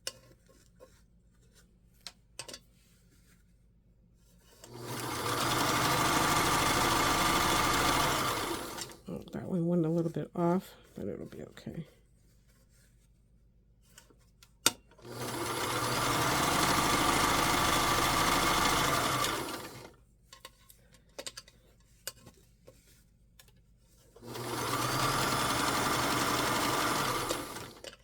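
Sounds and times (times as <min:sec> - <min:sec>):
sewing machine stitching: 0:04.6 - 0:09.0, 0:15.0 - 0:20.0, 0:24.2 - 0:28.0.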